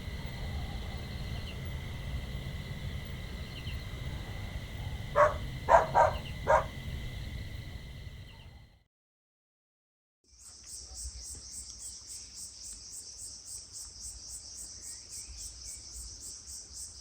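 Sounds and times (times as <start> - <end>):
high-pitched insect drone: 0.0 - 8.5.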